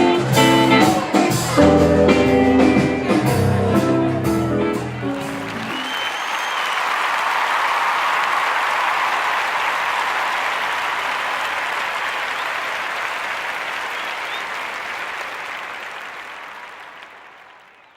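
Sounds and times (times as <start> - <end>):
audience applauding: 4.8 - 17.9.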